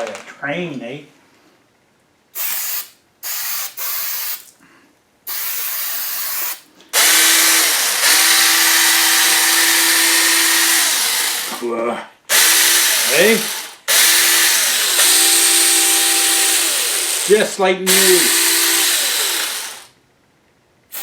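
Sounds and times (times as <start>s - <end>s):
electric chainsaw whining: 7.0s - 11.6s, 12.3s - 20.0s.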